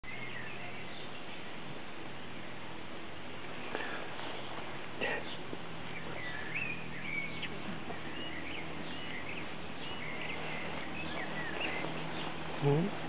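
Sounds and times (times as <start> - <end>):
small bird chirping: 4.2 - 13.0.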